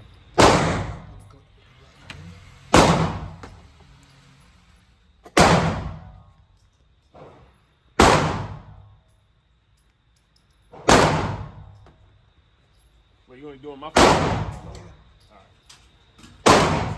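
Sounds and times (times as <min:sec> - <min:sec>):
pistol shots: 0:00.4 - 0:01.2, 0:02.7 - 0:03.4, 0:05.3 - 0:06.2, 0:08.0 - 0:08.9, 0:10.8 - 0:11.8, 0:14.0 - 0:14.9, 0:16.4 - 0:16.9.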